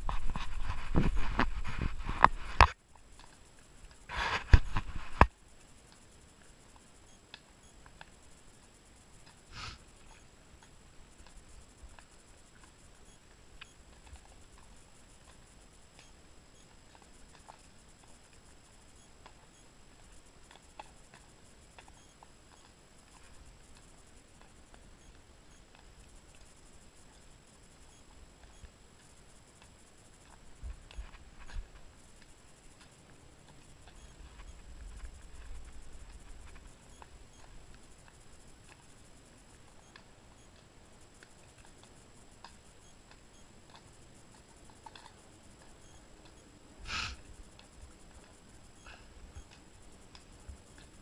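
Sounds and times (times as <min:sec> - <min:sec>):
horse hooves walking on trail: 0:00.0 - 0:05.3
horse snort: 0:46.8 - 0:47.2.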